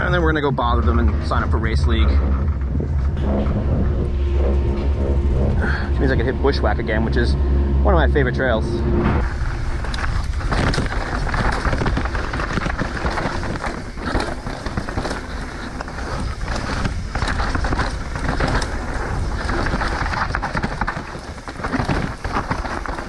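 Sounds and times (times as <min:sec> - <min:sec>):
bike rattling over dirt trail: 0:00.0 - 0:03.2, 0:09.2 - 0:23.0
wind buffeting microphone: 0:00.0 - 0:23.0.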